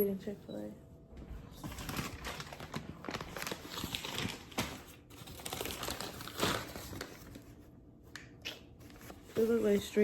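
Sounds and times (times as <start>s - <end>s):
plastic packaging crinkling: 1.5s - 7.6s.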